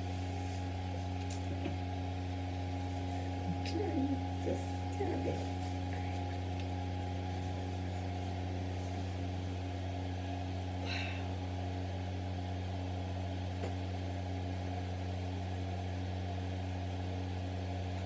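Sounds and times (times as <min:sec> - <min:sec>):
low mechanical hum: 0:00.0 - 0:18.0.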